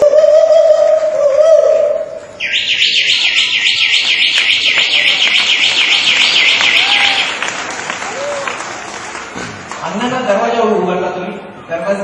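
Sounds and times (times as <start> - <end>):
mouth-made bird trill: 2.4 - 7.4.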